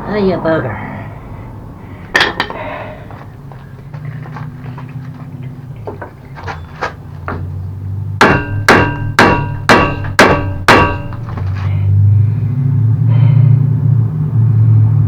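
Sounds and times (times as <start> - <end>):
hammer striking metal: 2.1 - 2.7, 8.2 - 11.4
steady low hum: 7.4 - 14.2.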